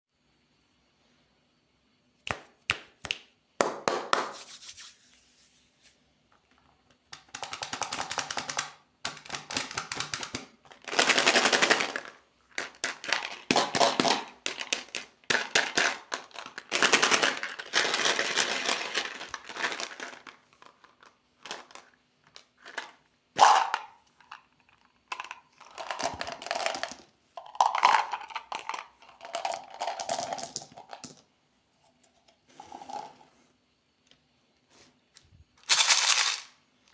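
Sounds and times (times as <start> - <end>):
plastic wrappers crinkling: 35.6 - 36.5.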